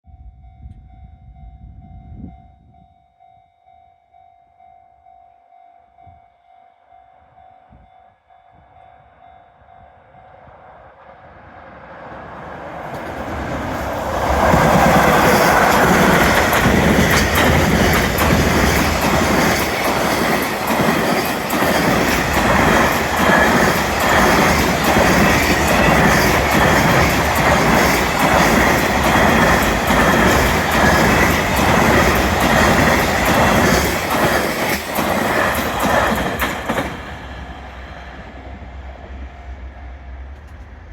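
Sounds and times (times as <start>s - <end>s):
crossing warning bell: 0.0s - 10.9s, 13.3s - 37.6s
train wheels clattering on rails: 12.1s - 39.4s.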